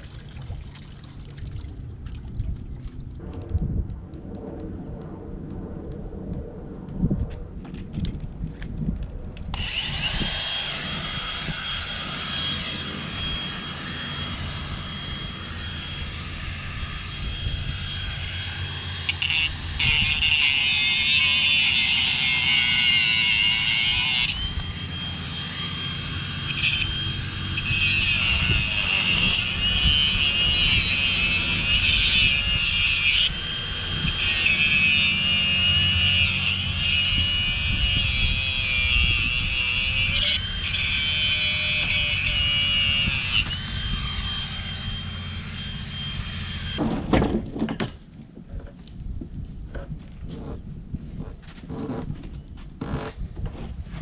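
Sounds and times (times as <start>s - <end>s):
power tool whining: 9.5s - 46.8s.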